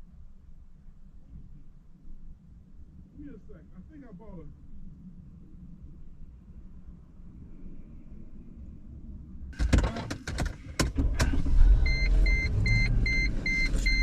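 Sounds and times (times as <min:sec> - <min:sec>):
low rumble: 0:00.0 - 0:09.7, 0:11.0 - 0:14.0
car door clicks and knocks: 0:09.6 - 0:11.0
door-open warning chime beeping: 0:11.8 - 0:14.0.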